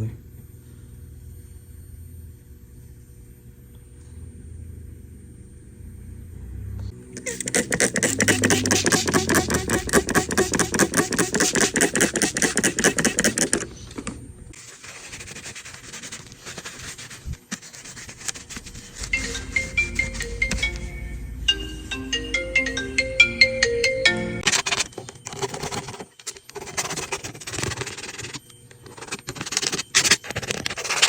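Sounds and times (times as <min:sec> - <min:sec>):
rhythmic scrubbing on tablet: 0:07.2 - 0:13.7, 0:14.5 - 0:21.4, 0:24.4 - 0:31.0.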